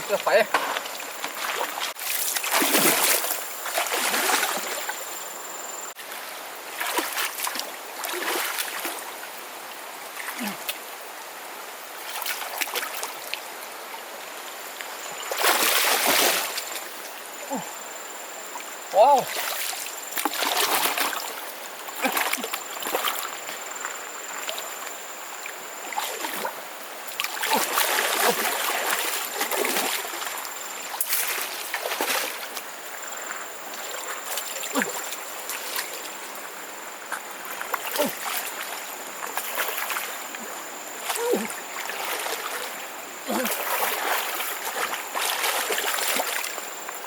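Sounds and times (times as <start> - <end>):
hands splashing river water: 1.2 - 5.0, 6.7 - 9.0, 15.2 - 16.9, 19.2 - 24.8, 25.8 - 36.2, 37.0 - 47.0.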